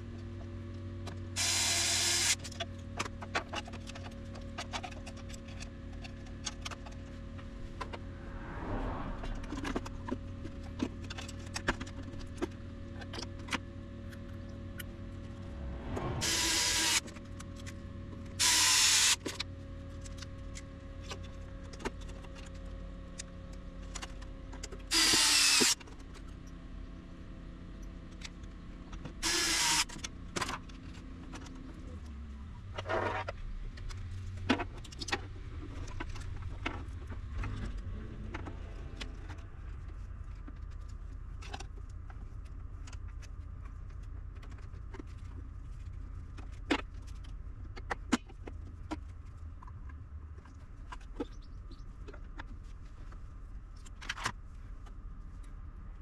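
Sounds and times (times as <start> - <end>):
small motorized tool whirring: 1.4 - 2.6, 16.2 - 17.2, 18.4 - 19.4, 24.9 - 25.8, 29.2 - 30.1
electrical hum: 1.4 - 46.6
small clicks and handling noises: 27.8 - 55.6.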